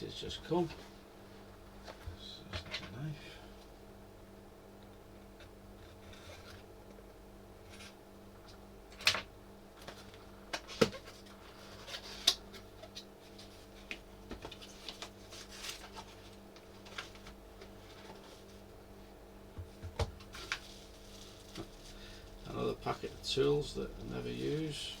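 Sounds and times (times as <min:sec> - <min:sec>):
faint steady hum: 0:00.0 - 0:25.0
packaging clicks and rustles: 0:09.8 - 0:18.6, 0:20.2 - 0:22.0.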